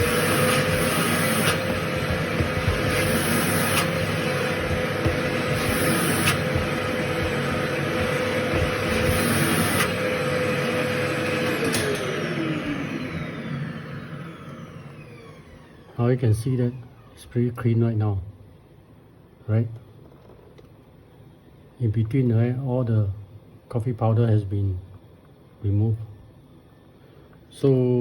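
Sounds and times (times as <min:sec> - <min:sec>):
vacuum cleaner running: 0:00.0 - 0:17.2.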